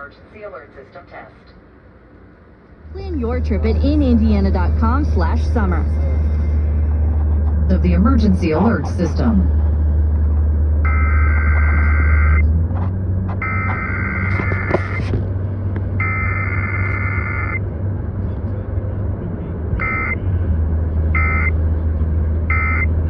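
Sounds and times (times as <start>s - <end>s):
car rumble: 1.7s - 23.0s
rasping two-tone data bursts: 10.8s - 12.4s, 13.4s - 15.1s, 16.0s - 17.6s, 19.8s - 20.2s, 21.2s - 21.5s, 22.5s - 23.0s.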